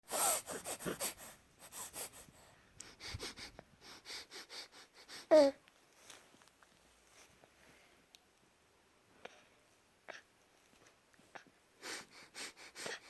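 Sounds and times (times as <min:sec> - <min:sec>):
baby snuffly breathing: 0:00.0 - 0:05.6, 0:11.3 - 0:13.0.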